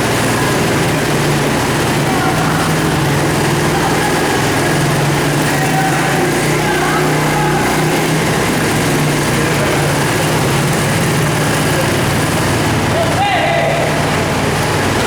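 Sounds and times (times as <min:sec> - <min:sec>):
two-stroke engine running: 0:00.0 - 0:15.0.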